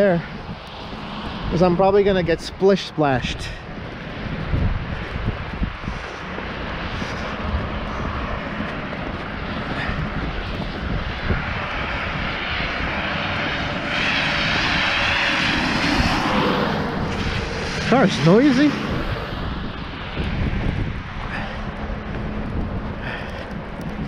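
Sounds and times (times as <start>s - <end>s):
noisy car passing close: 0.0s - 24.0s
wind rumble on microphone: 0.0s - 24.0s
tyres hissing through wet snow: 5.8s - 20.1s.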